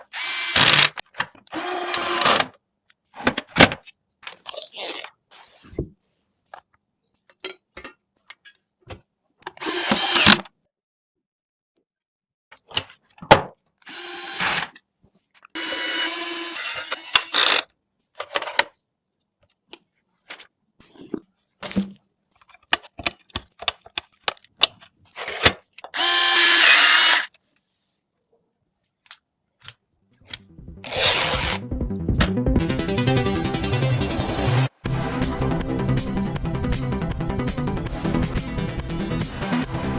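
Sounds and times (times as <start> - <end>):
power tool whirring: 0.0 - 2.5, 9.6 - 10.4, 13.9 - 14.8, 15.6 - 17.6, 25.2 - 27.4, 30.8 - 31.6
computer parts clicking and knocking: 0.2 - 2.5, 16.7 - 17.6.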